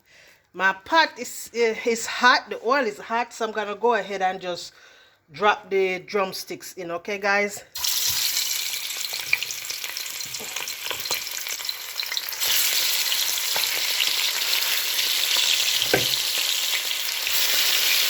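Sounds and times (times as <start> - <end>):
chicken frying in oil: 7.8 - 18.0
knock: 15.8 - 16.2.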